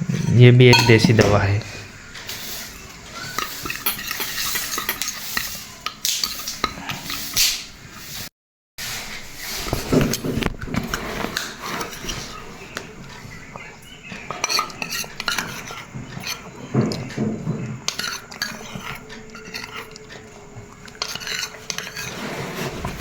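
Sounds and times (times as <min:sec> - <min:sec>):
spoon clinking against dish: 0:00.7 - 0:01.4, 0:03.3 - 0:05.5.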